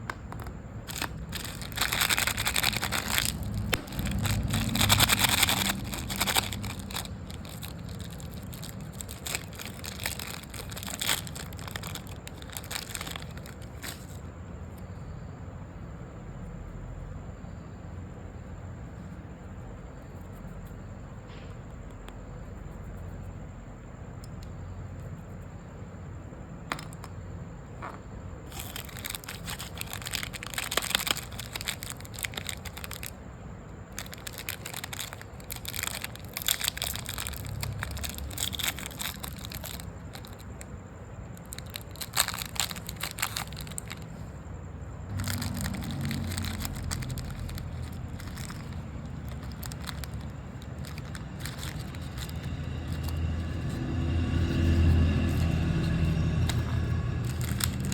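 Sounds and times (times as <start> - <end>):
snack wrappers crinkling: 0.0 - 14.3, 28.4 - 33.2, 33.9 - 44.4, 45.1 - 57.9.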